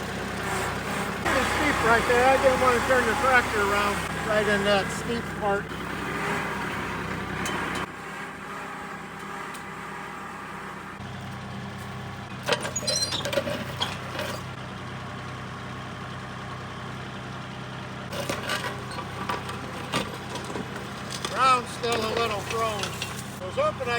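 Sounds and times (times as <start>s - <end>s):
tractor diesel engine running: 0.0s - 23.9s
metal clanks and knocks: 6.8s - 7.9s, 12.3s - 14.6s, 18.1s - 23.4s.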